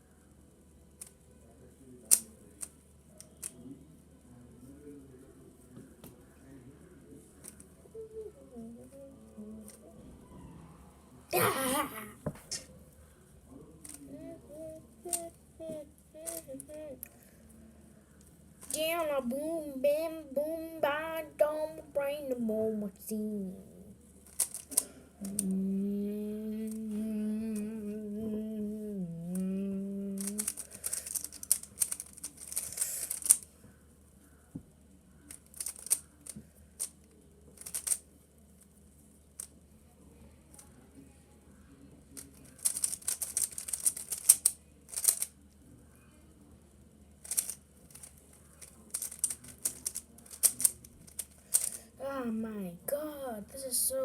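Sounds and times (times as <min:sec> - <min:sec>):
person humming: 0:08.0 - 0:09.8, 0:14.1 - 0:17.1, 0:24.7 - 0:31.0
puzzle cube clicking and rattling: 0:16.2 - 0:16.5, 0:24.2 - 0:25.5, 0:30.2 - 0:33.5, 0:35.3 - 0:37.0, 0:37.6 - 0:38.0, 0:42.2 - 0:45.4, 0:47.2 - 0:51.8.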